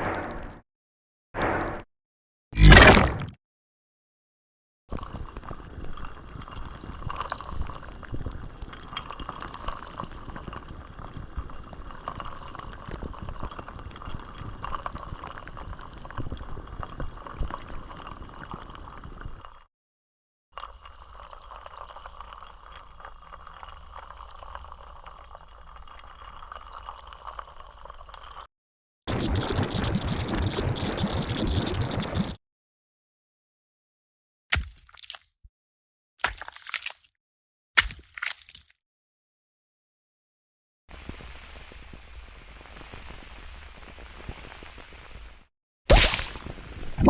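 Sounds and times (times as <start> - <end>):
crackling liquid bubbling and dripping: 4.9 - 19.7, 20.6 - 28.5, 29.1 - 32.4, 34.5 - 35.3, 36.2 - 37.2, 37.8 - 38.8, 40.9 - 47.0.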